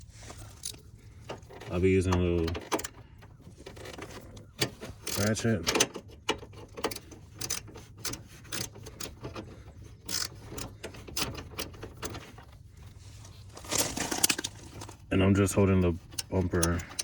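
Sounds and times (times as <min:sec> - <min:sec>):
hand ratchet clicking: 0:04.6 - 0:12.3, 0:15.8 - 0:17.0.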